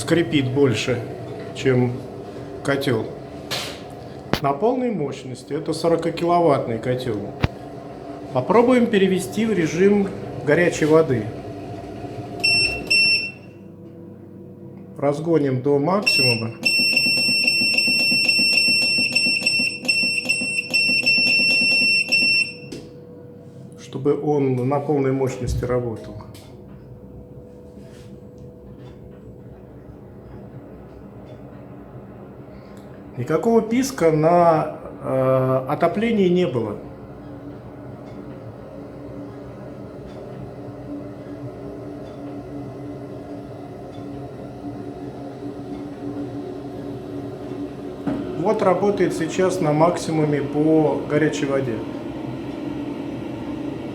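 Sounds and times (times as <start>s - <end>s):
boiler hum: 0.0s - 53.9s.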